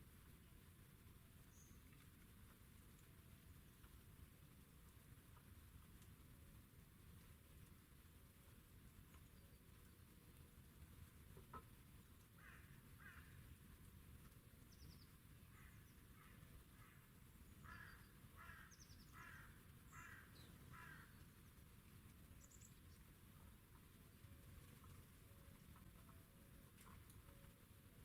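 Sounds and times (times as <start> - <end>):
small birds chirping: 1.4 - 4.1, 9.0 - 27.3
faint crow cawing: 12.4 - 13.6, 15.5 - 21.2.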